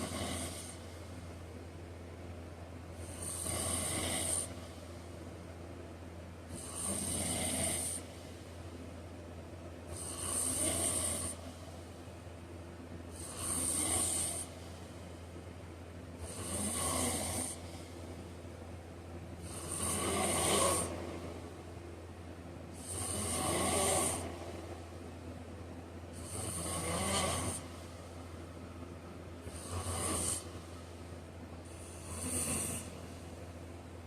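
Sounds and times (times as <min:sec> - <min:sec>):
man snoring: 0:00.0 - 0:00.8, 0:03.0 - 0:04.8, 0:06.5 - 0:08.2, 0:09.9 - 0:11.6, 0:13.1 - 0:14.7, 0:16.2 - 0:17.9, 0:19.4 - 0:21.2, 0:22.7 - 0:24.6, 0:26.1 - 0:27.9, 0:29.5 - 0:30.7, 0:31.6 - 0:33.1
steady low hum: 0:00.0 - 0:34.0.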